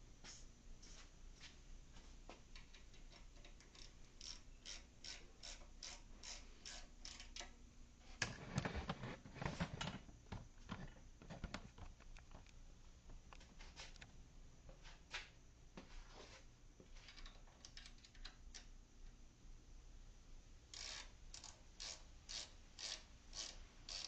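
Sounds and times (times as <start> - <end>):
ratchet wrench clicking: 2.6 - 7.5, 20.7 - 24.0.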